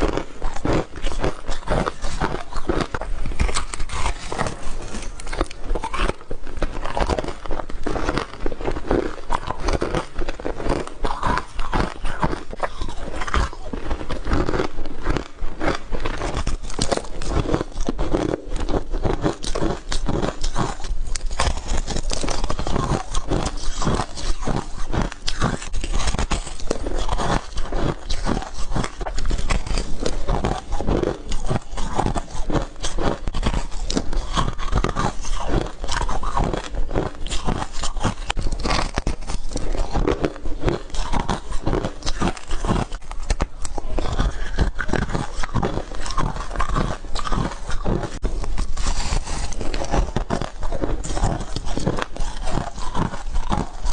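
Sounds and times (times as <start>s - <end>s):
ice crunching: 0.0s - 53.9s.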